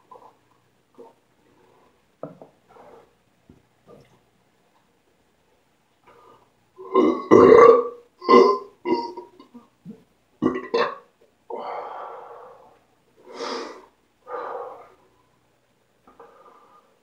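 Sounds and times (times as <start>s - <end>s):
man belching: 6.8s - 9.6s, 10.4s - 11.0s.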